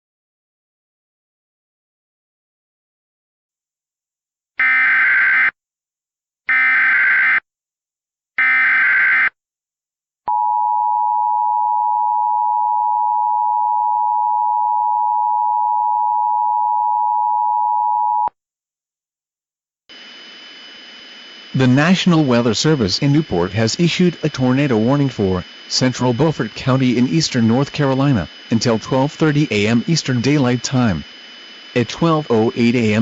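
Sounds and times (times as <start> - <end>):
buzzing digital data tones: 19.9 - 33.0.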